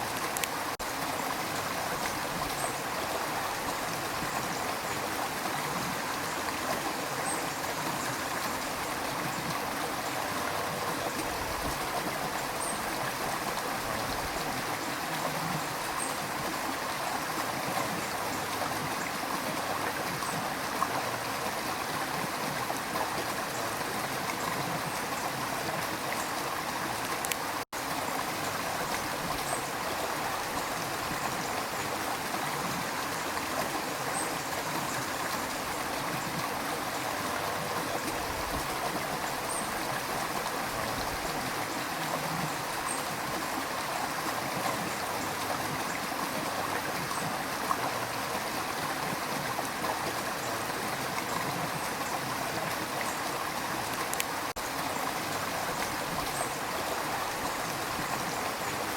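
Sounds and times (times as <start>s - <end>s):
river water rushing: 0.0s - 58.9s.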